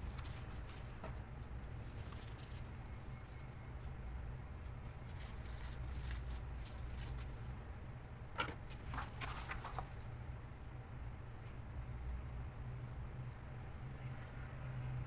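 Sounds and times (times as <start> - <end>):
low steady hum: 0.0 - 14.5.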